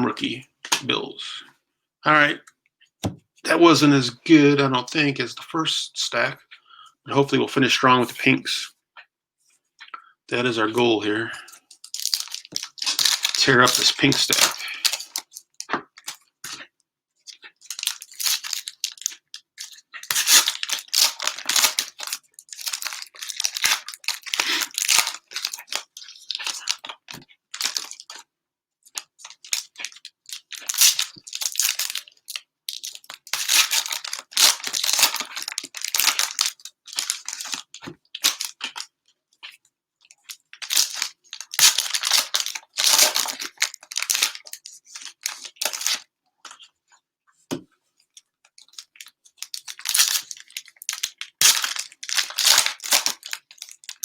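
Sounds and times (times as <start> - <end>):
cellophane wrappers tearing and crinkling: 11.8 - 16.2, 17.3 - 28.2, 29.0 - 38.9, 40.3 - 46.1, 48.6 - 54.0.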